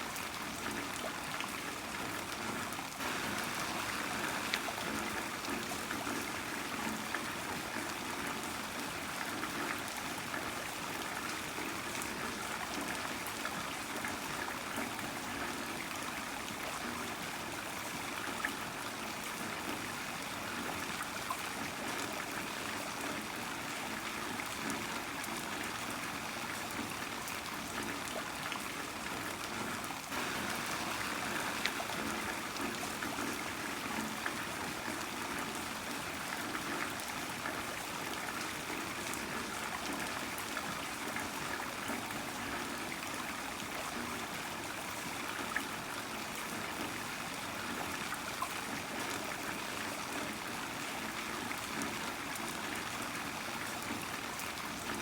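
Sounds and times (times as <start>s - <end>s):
heavy rain falling: 3.0s - 6.4s, 30.1s - 34.9s.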